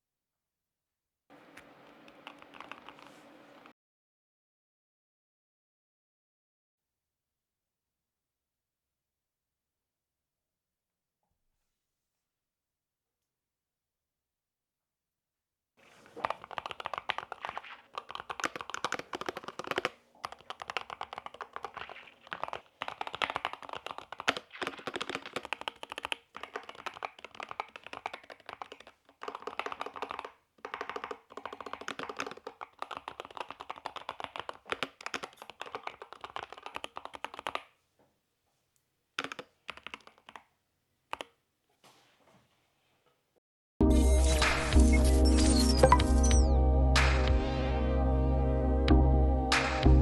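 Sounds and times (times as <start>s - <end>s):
keyboard key clacks: 1.4s - 3.7s, 16.0s - 37.6s, 39.2s - 40.4s.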